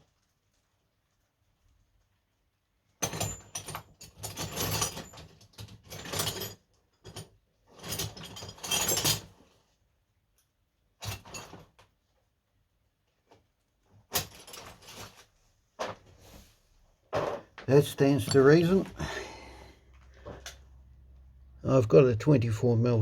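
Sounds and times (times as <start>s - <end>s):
metal hand tools clinking: 17.8s - 19.2s.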